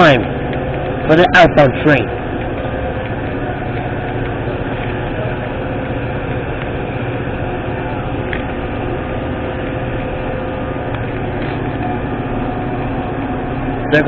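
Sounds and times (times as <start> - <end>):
diesel locomotive engine drone: 0.0 - 14.0.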